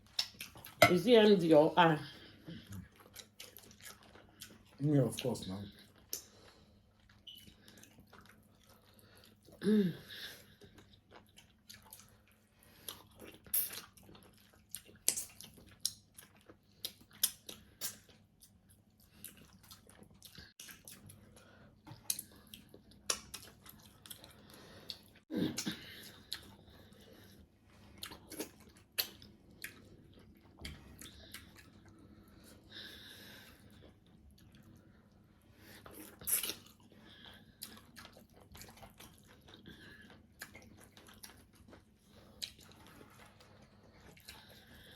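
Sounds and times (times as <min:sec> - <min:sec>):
chewing and wet mouth sounds: 0:00.0 - 0:44.9.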